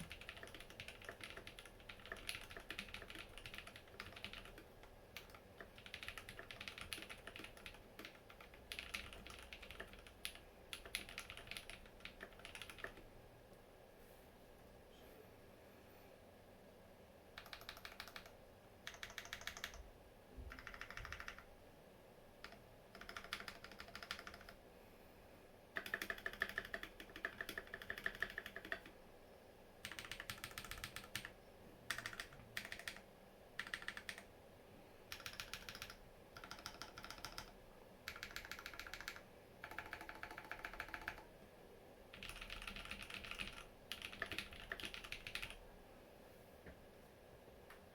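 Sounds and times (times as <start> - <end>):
typing on mechanical keyboard: 0.0 - 13.1, 17.4 - 19.8, 20.5 - 21.5, 22.4 - 24.6, 25.7 - 29.0, 29.8 - 34.3, 35.1 - 41.3, 42.1 - 45.6.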